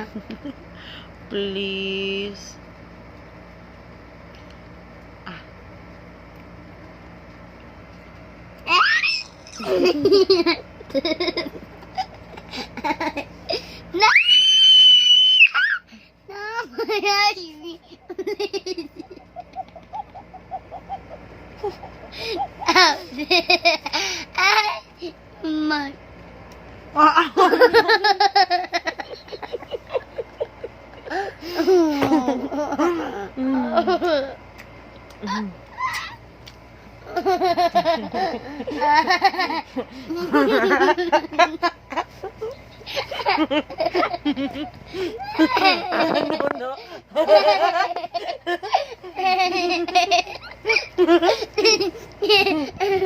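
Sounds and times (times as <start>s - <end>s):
child laughing and squealing: 8.7s - 10.1s, 14.0s - 17.4s, 35.7s - 36.2s, 45.0s - 46.2s
young child laughing: 8.7s - 14.2s, 15.5s - 25.2s, 27.2s - 34.4s, 37.1s - 53.0s.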